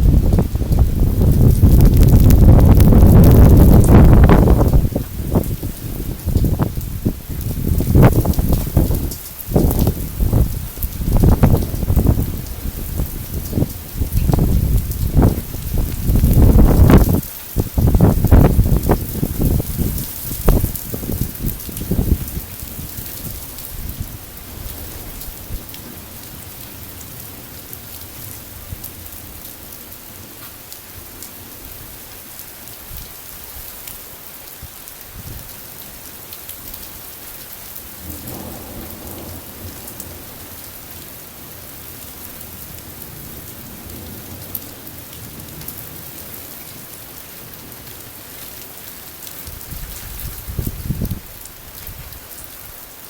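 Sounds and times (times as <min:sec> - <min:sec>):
thunder rumbling: 0:00.0 - 0:29.4, 0:37.9 - 0:46.4
rain hissing: 0:00.0 - 0:53.0
sharp thunder crack: 0:38.0 - 0:40.4.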